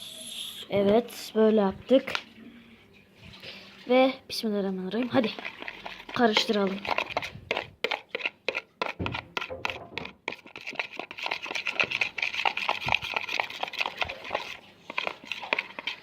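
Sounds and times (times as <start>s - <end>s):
spoon stirring slime: 3.2s - 16.0s.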